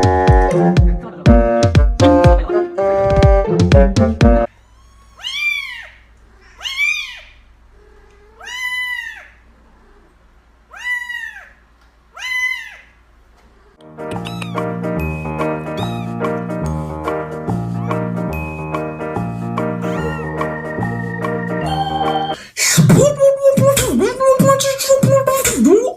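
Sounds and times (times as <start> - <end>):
music: 0.0 - 4.5, 13.8 - 25.7
cat meowing: 4.5 - 13.0, 13.6 - 14.8, 15.7 - 16.4, 17.7 - 18.1, 19.8 - 20.8.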